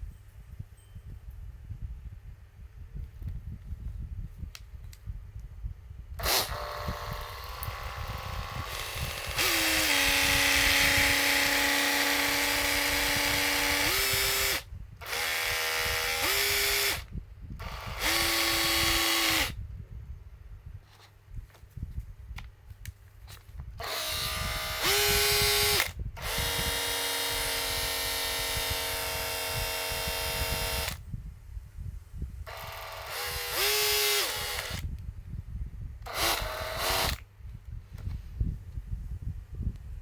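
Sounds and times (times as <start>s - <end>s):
cordless drill running: 6.2s - 19.6s, 23.8s - 31.0s, 32.5s - 35.0s, 36.0s - 37.2s.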